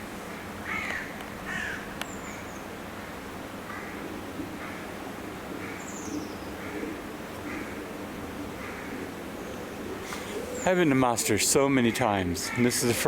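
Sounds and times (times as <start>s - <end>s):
crows cawing: 0.4s - 2.4s, 3.0s - 10.6s, 12.4s - 13.0s.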